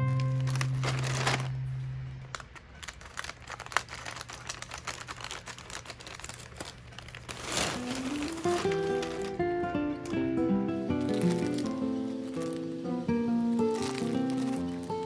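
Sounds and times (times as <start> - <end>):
guitar note ringing: 0.0 - 2.2, 7.6 - 15.0
packaging crinkling: 0.0 - 10.2, 10.9 - 15.0.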